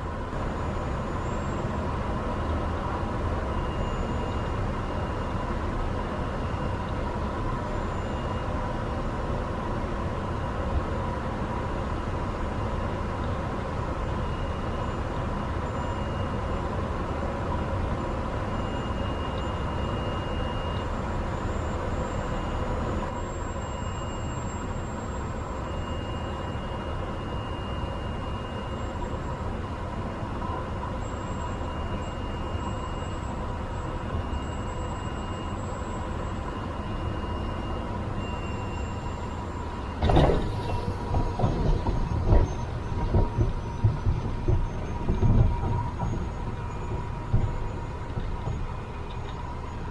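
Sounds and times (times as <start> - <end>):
plane bumping on rough airstrip: 40.0 - 49.7
wheels touching down thump: 40.0 - 49.8.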